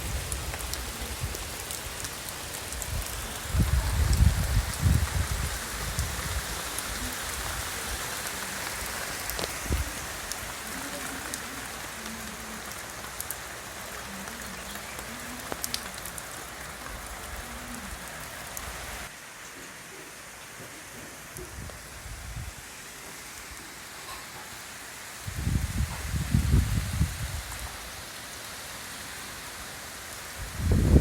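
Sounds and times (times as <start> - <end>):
steady rain hiss: 0.0 - 31.0
raindrop ticks: 8.2 - 18.7.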